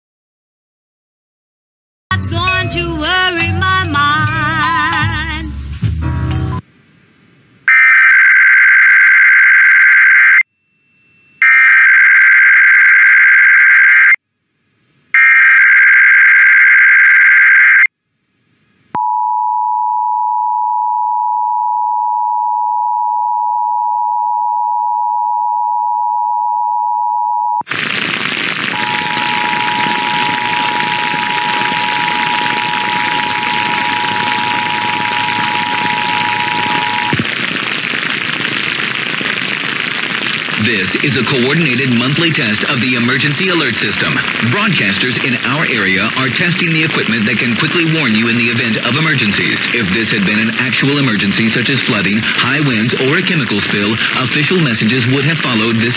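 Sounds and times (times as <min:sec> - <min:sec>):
loud static hiss: 0:03.7 - 0:10.4, 0:27.6 - 0:55.9
two-tone attention signal: 0:11.0 - 0:14.2, 0:15.2 - 0:17.9, 0:28.8 - 0:37.2
buzzy data bursts: 0:27.7 - 0:40.6.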